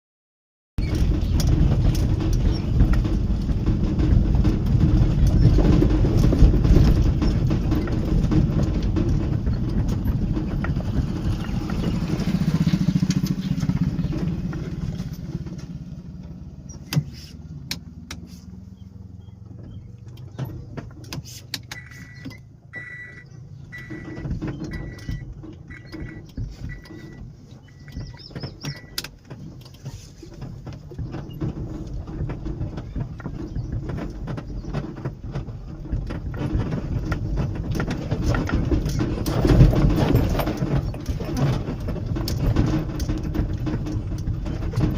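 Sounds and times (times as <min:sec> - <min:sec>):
auto-rickshaw engine rumbling: 0:00.8 - 0:44.9
short high beeps: 0:21.8 - 0:28.0.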